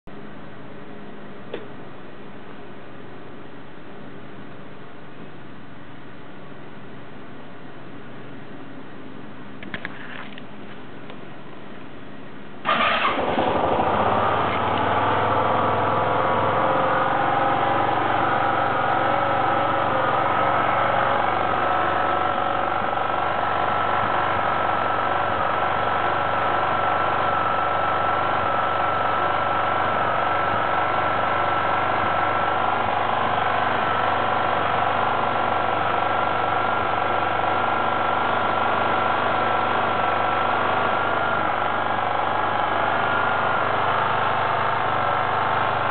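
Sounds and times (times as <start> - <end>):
scooter engine idling: 12.6 - 45.9.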